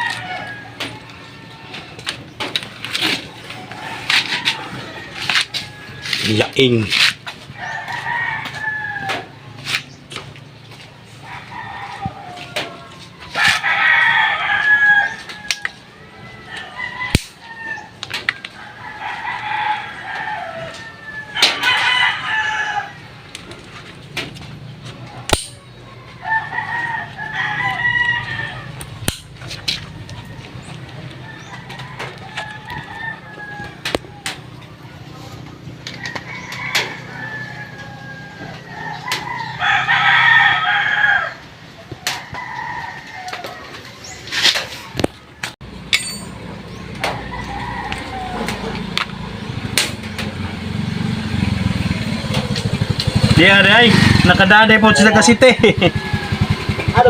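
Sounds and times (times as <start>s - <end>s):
roosters crowing: 0.0s - 57.0s.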